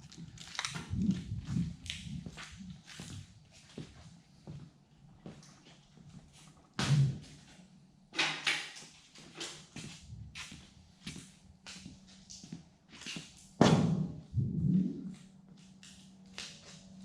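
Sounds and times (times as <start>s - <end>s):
faint steady hum: 8.9s - 17.0s.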